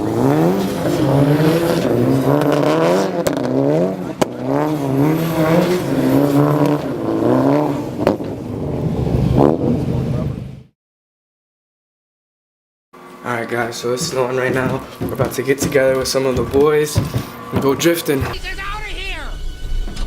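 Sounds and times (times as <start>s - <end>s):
car engine revving: 0.0s - 10.7s.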